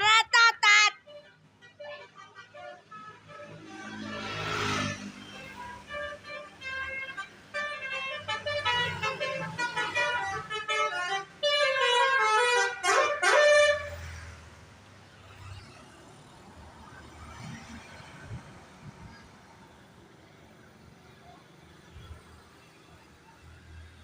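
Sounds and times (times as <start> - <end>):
multi-tone bus horn tune: 0.0 - 14.0.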